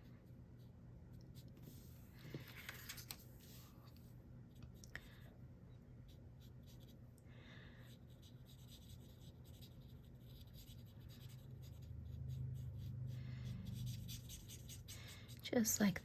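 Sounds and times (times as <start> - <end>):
steady low hum: 0.0 - 16.0
marker scratching on card: 7.9 - 13.0, 13.6 - 15.4.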